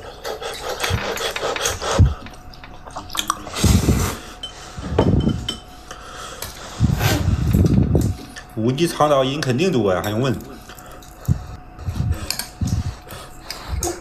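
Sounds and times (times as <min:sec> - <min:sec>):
dishes and utensils clinking: 0:04.4 - 0:05.7.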